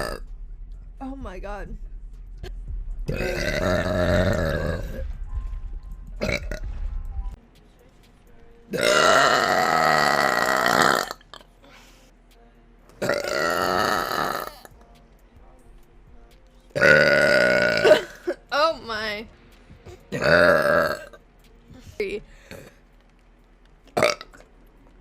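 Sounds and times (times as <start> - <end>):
woman burping: 3.1 - 5.0, 6.2 - 6.6, 8.8 - 11.4, 13.0 - 14.7, 16.8 - 18.4, 19.9 - 21.2, 24.0 - 24.4.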